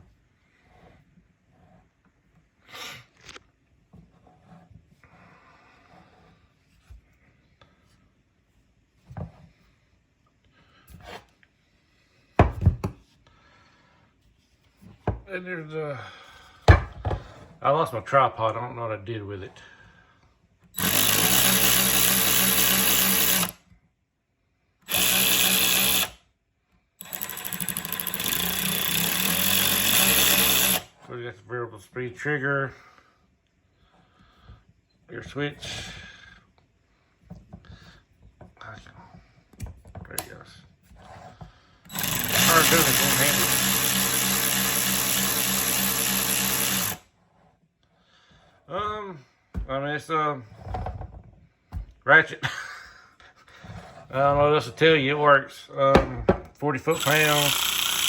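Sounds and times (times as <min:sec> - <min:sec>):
cordless ratchet motor running: 0:20.8 - 0:23.6, 0:24.9 - 0:26.2, 0:27.0 - 0:30.9, 0:41.9 - 0:47.0, 0:56.9 - 0:58.0.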